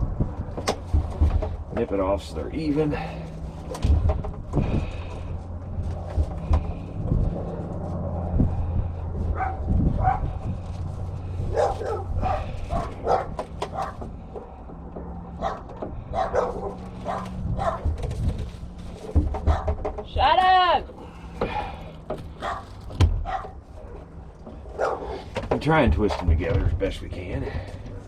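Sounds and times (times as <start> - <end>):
wind buffeting microphone: 0.0 - 14.3, 15.2 - 19.8
dog barking: 9.3 - 10.3, 11.5 - 14.0, 15.4 - 17.9, 19.4 - 19.7, 22.4 - 24.0, 24.7 - 25.2.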